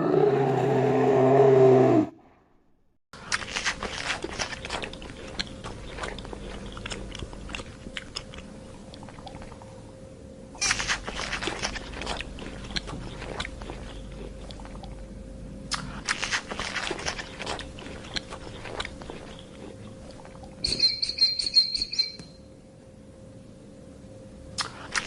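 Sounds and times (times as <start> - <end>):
animal chewing and crunching food: 3.2 - 9.8, 10.6 - 21.6, 24.6 - 25.0
high squeaky chirps: 20.6 - 22.5.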